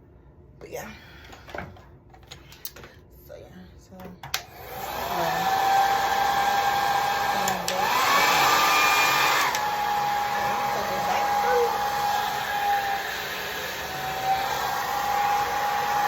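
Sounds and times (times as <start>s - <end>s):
blow dryer running: 4.4s - 16.0s
blow dryer switch click: 7.4s - 8.0s, 9.3s - 9.7s.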